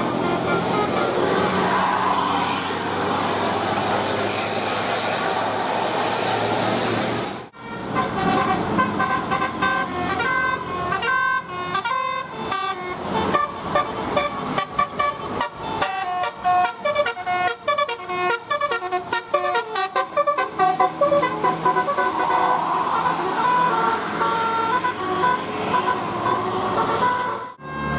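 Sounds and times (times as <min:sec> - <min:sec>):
multi-tone bus horn melody: 0:00.0 - 0:01.6, 0:07.5 - 0:27.9.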